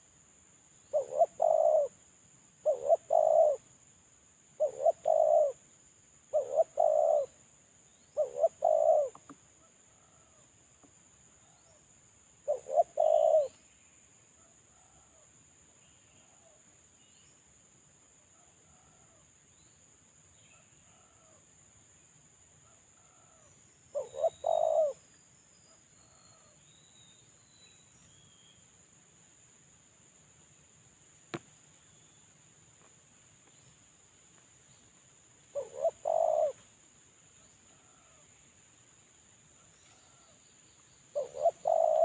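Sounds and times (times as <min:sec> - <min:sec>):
dove cooing: 0:00.9 - 0:02.0, 0:02.6 - 0:03.6, 0:04.6 - 0:05.6, 0:06.3 - 0:07.4, 0:08.2 - 0:09.4, 0:12.4 - 0:13.6, 0:23.0 - 0:25.0, 0:35.5 - 0:36.6, 0:41.1 - 0:42.0
small birds chirping: 0:04.6 - 0:05.6, 0:06.3 - 0:10.1, 0:12.4 - 0:14.0, 0:23.9 - 0:28.8, 0:31.3 - 0:36.8, 0:39.6 - 0:42.0.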